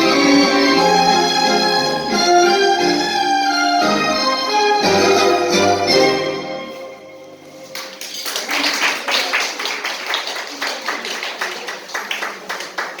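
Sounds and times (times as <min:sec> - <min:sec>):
orchestral music: 0:00.0 - 0:07.7
applause: 0:07.7 - 0:13.0.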